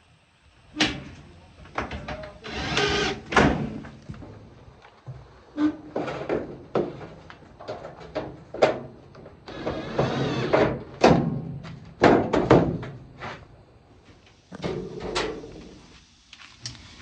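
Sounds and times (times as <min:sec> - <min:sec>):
sheet-metal clanks and thuds: 0:00.8 - 0:04.4, 0:05.7 - 0:13.0.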